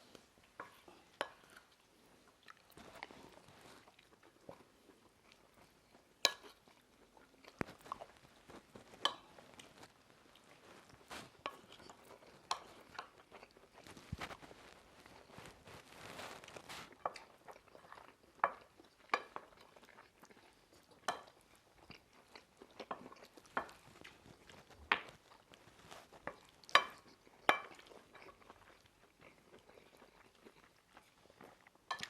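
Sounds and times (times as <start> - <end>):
quiet chewing: 0.0 - 32.0
cutlery clinking against plates: 26.3 - 27.9.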